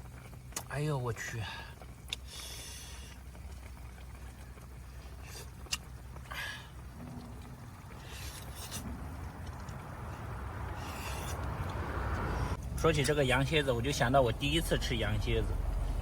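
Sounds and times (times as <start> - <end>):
steady low rumble: 3.2 - 16.0.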